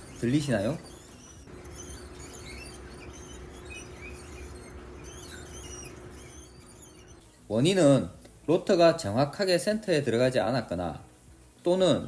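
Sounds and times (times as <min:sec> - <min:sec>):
disc brake squeaking chirps: 0:00.0 - 0:07.5.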